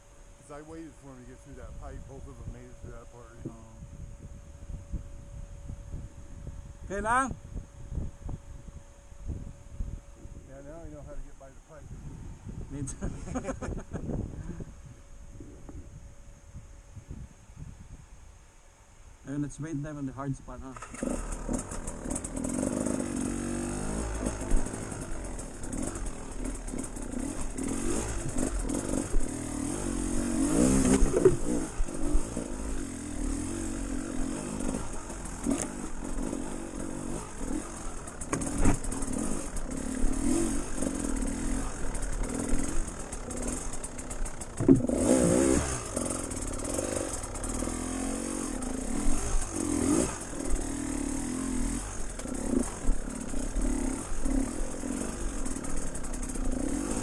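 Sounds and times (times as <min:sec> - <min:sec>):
dirt bike engine revving: 0:20.6 - 0:57.0
bike rattling over ground: 0:20.7 - 0:57.0.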